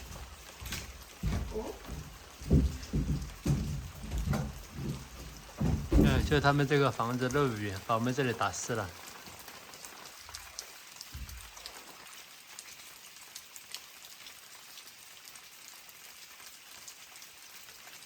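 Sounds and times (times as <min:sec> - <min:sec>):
soft low thumps: 0:00.0 - 0:06.7
rain falling: 0:00.0 - 0:18.0
water drips ticking: 0:00.0 - 0:18.0.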